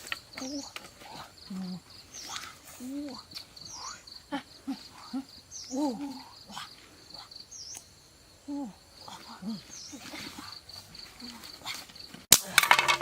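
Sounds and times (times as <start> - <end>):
insects chirping: 0.0 - 13.0.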